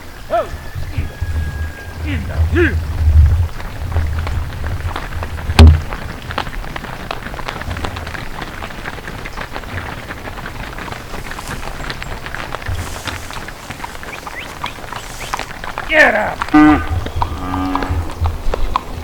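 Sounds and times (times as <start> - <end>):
cattle hooves clattering on road: 0.0 - 19.0
low rumble: 0.8 - 6.6.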